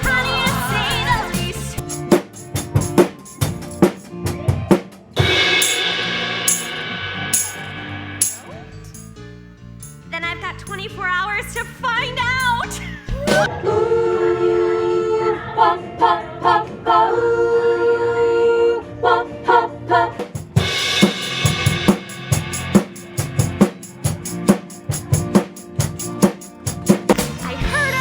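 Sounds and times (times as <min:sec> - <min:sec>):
drum kit playing: 0:00.0 - 0:13.5, 0:20.2 - 0:28.0
held chords with accented hits: 0:05.2 - 0:12.9.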